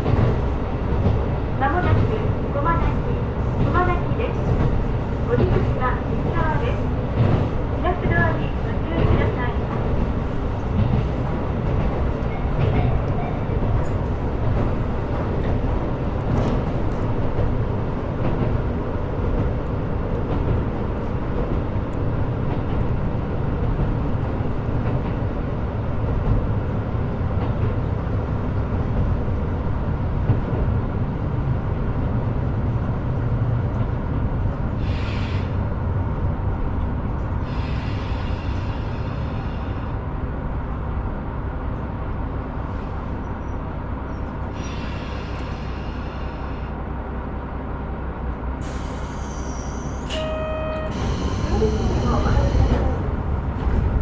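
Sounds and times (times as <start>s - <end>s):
railcar engine and wheels rumbling: 0.0s - 54.0s
hiss: 48.6s - 50.0s.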